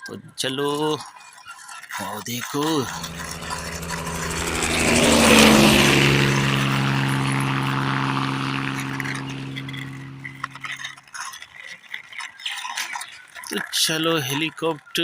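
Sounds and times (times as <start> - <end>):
helicopter flying past: 2.6 - 11.2.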